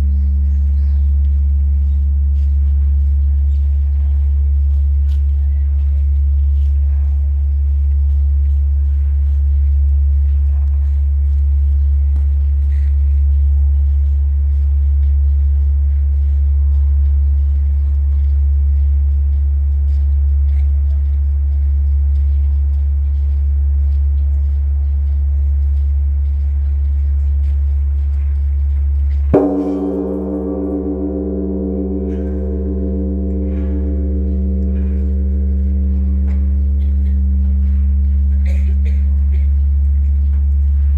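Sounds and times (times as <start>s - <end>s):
temple bell struck: 29.4s - 40.5s
temple bell humming: 29.4s - 40.9s.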